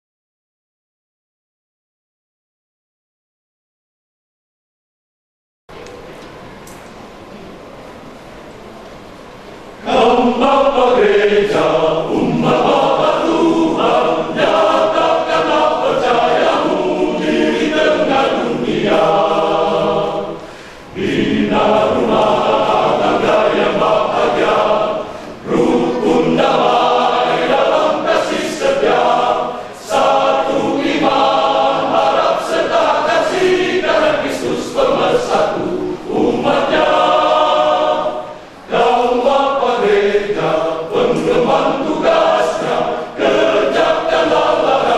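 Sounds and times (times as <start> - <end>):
men's choir singing: 9.8 - 44.9.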